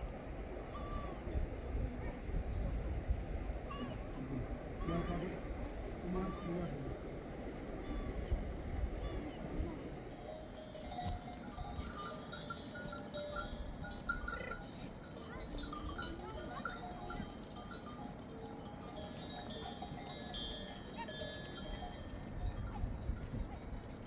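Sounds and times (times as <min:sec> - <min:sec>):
livestock bells clanking: 0:10.1 - 0:24.0.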